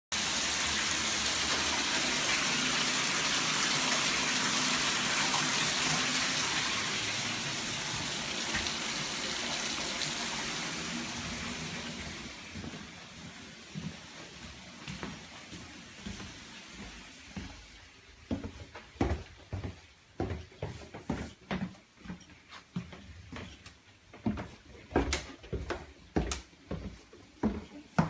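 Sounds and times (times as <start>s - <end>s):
water running from tap: 0.1s - 15.5s.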